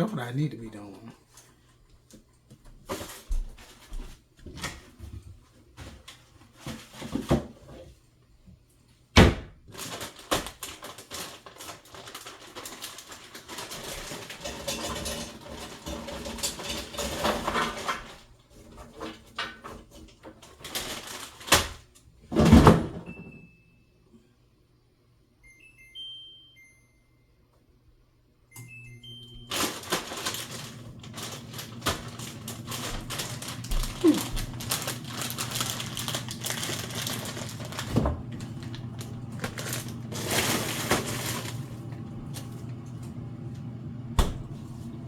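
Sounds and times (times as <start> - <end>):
short electronic appliance beeps: 23.1 - 23.9, 25.4 - 27.3, 28.5 - 29.8.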